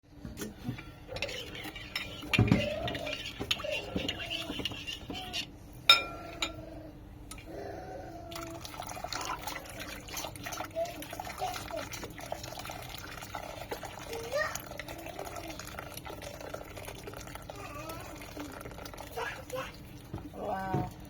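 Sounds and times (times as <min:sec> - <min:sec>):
utensils and dishes clinking: 0:00.4 - 0:06.6.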